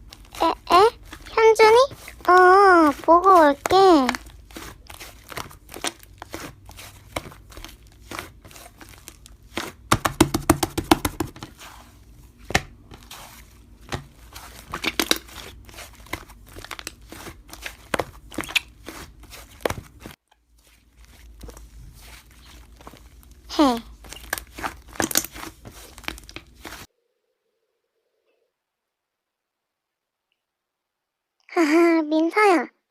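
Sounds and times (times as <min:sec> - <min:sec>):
slime squished crackling and popping: 0:00.0 - 0:11.8, 0:12.4 - 0:20.2, 0:20.8 - 0:26.9.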